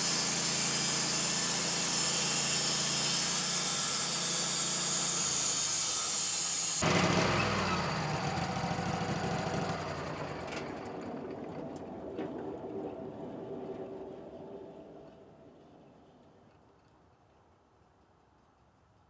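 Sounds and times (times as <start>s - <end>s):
band saw blade cutting log: 0.0s - 10.0s
sawmill engine running: 0.0s - 15.6s.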